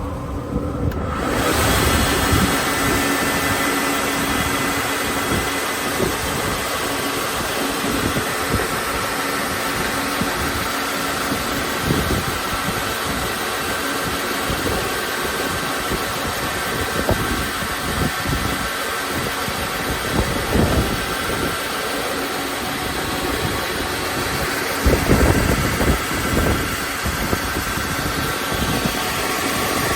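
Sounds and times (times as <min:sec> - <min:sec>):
belt sander running: 0:00.0 - 0:29.9
steady whining tones: 0:00.0 - 0:29.9.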